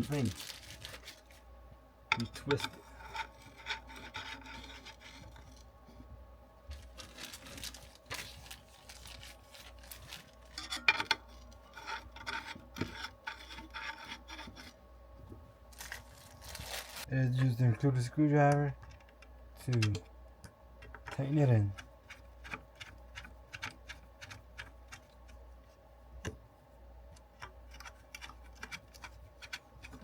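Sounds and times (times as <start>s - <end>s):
plastic parts rubbing and scraping: 2.2s - 5.7s, 6.7s - 14.8s.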